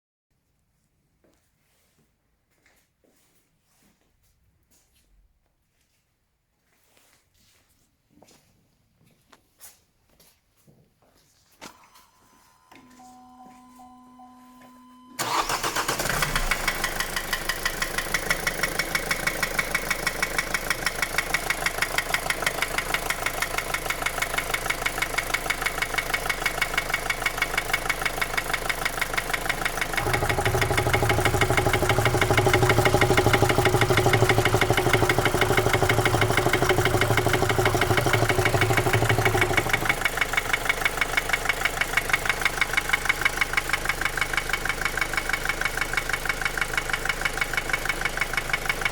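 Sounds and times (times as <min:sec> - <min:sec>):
diesel engine knocking: 0:15.2 - 0:48.9.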